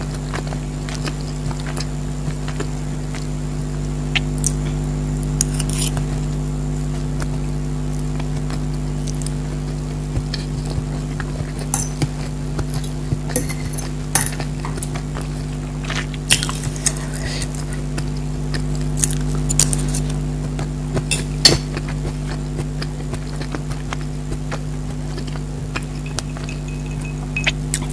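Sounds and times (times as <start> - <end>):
steady low hum: 0.0 - 27.9
cutlery clinking on a plate: 11.8 - 12.1, 12.7 - 15.0
eating smacks and clicks: 15.9 - 27.9.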